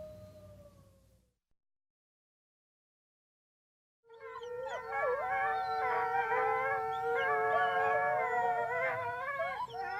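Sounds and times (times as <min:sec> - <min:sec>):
wolves howling: 0:04.1 - 0:09.9.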